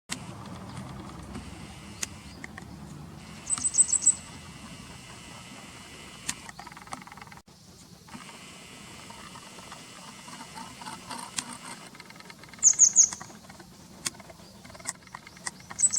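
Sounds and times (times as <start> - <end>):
bird calling high sharp notes: 3.2 - 4.6, 12.4 - 15.9.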